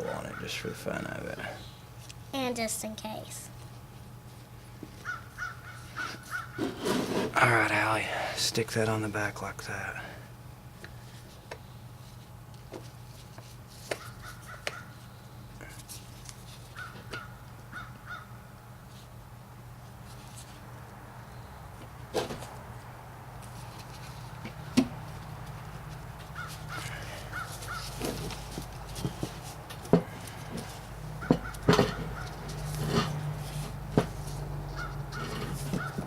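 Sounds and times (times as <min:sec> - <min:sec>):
steady low hum: 0:00.0 - 0:36.0
crows cawing: 0:05.0 - 0:06.6, 0:14.0 - 0:14.9, 0:16.8 - 0:18.4, 0:26.3 - 0:28.1, 0:31.2 - 0:32.5, 0:34.8 - 0:36.0.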